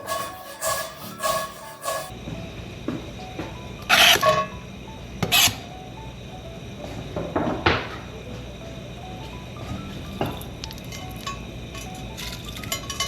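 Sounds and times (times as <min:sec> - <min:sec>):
quiet background music: 0:00.0 - 0:13.0
utensils knocking against pan: 0:10.1 - 0:13.0.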